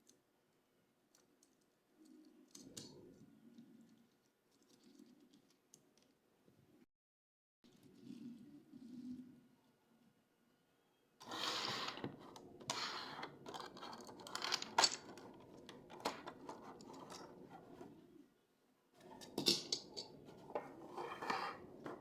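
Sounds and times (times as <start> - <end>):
toy train cars clicking: 11.2 - 17.9.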